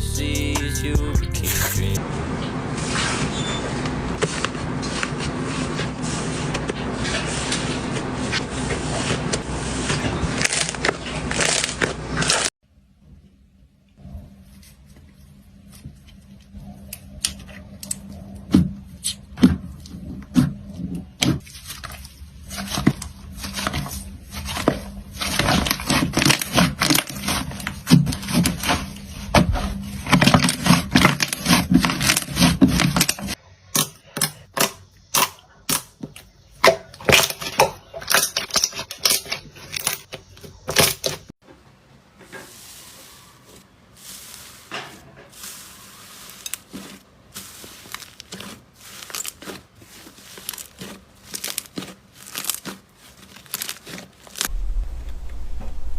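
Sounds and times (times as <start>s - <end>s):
slime crackling and popping: 46.0s - 55.5s.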